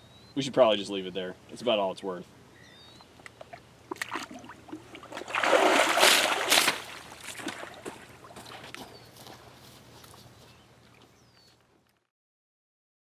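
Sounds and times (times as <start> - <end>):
muddy water splashing: 3.4 - 8.8.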